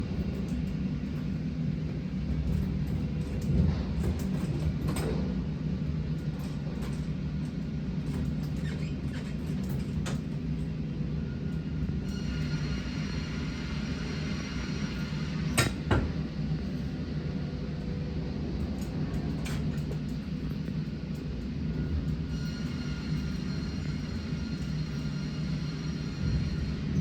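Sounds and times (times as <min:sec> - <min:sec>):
high machine whine: 0:09.6 - 0:27.0.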